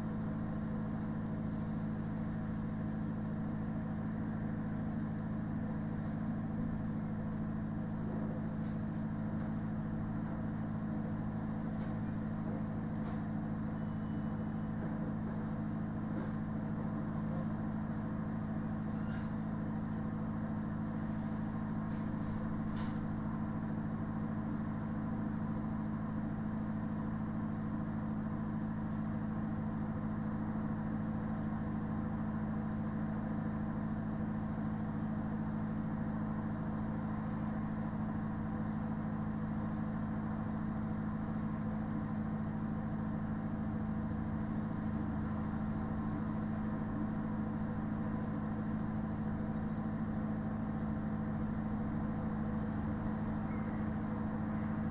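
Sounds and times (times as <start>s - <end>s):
refrigerated lorry droning hum: 0.0s - 54.9s.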